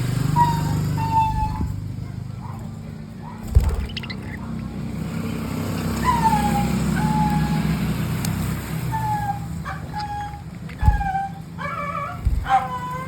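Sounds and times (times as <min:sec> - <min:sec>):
large vehicle engine passing: 0:00.0 - 0:09.6.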